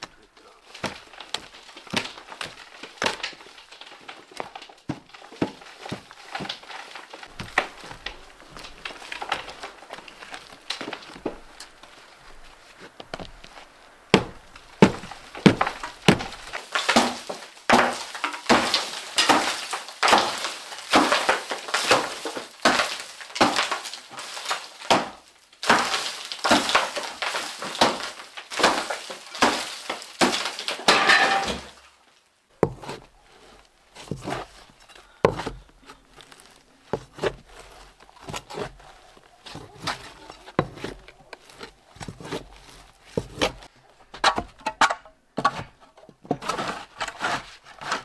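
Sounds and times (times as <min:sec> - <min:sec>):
knocks: 0:44.2 - 0:45.8.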